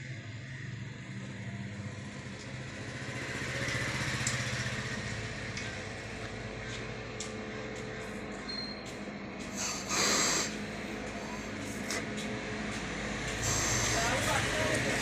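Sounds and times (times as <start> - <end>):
low motor hum: 0.0 - 15.0
hiss: 9.5 - 10.6, 13.3 - 14.3.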